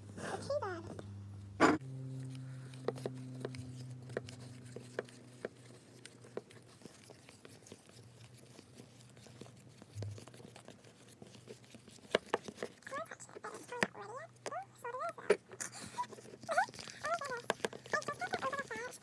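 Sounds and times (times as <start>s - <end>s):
faint low hum: 0.0s - 19.0s
spoon stirring slime in bowl: 2.5s - 13.9s.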